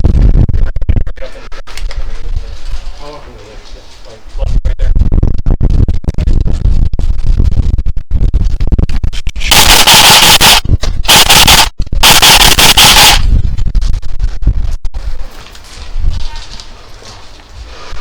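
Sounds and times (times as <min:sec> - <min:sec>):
wind buffeting microphone: 0:00.0 - 0:09.5, 0:13.1 - 0:18.0
full-auto airsoft fire: 0:09.5 - 0:13.2.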